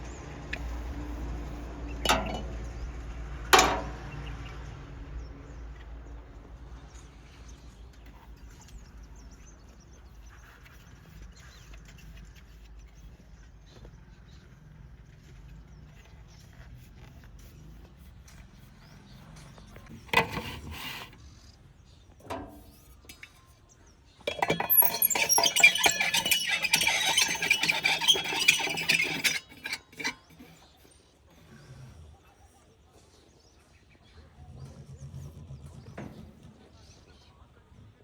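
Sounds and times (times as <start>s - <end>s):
metallic clattering and rattling: 1.5s - 4.3s, 22.2s - 30.8s.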